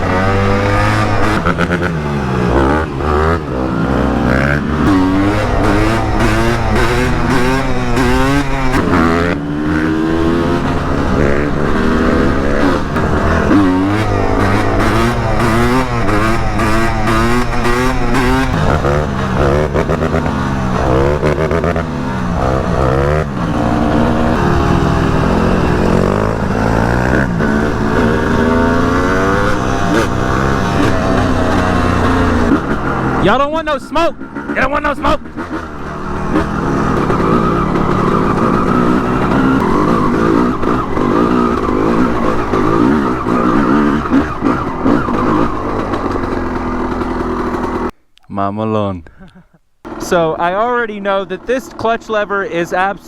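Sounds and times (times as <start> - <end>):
motorcycle engine revving: 0.0 - 48.0, 49.8 - 53.0.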